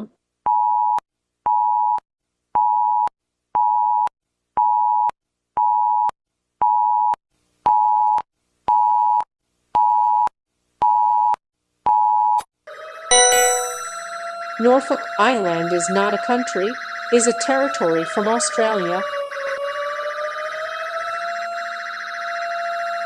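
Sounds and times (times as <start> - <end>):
two-note electronic beep: 13.1 - 14.2.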